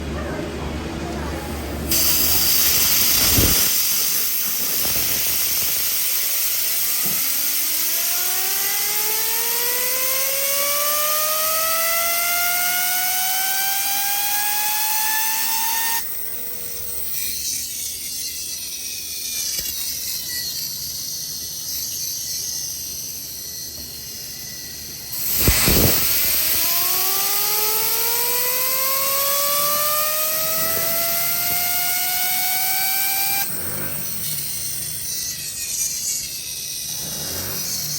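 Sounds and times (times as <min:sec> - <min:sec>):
engine revving whine: 0:06.8 - 0:21.6, 0:22.6 - 0:37.9.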